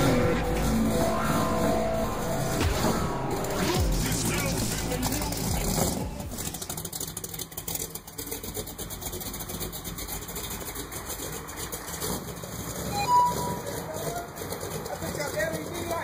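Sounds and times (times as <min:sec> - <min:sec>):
truck engine idling: 0:00.0 - 0:16.0.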